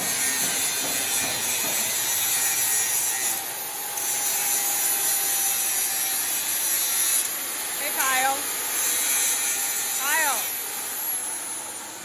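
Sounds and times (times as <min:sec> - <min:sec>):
shop tool rasping: 0:00.0 - 0:03.4.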